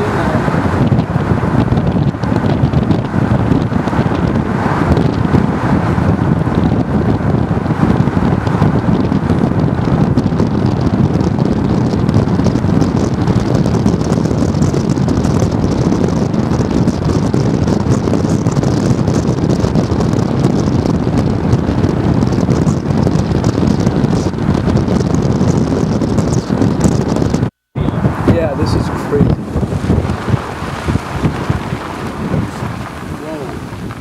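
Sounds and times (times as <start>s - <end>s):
strong wind on microphone: 0.0s - 34.0s.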